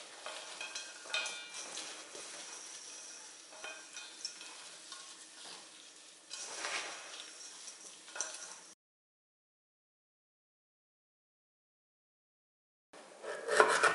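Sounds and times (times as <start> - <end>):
utensil stirring and scraping bowl: 0.0 - 8.8, 13.2 - 13.9.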